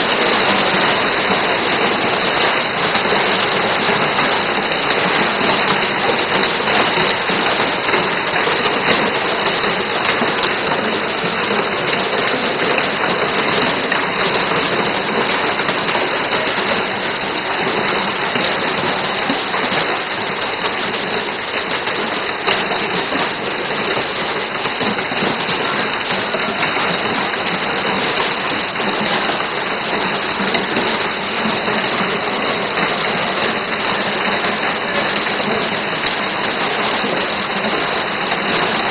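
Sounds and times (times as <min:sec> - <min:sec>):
hail and heavy rain: 0:00.0 - 0:38.9.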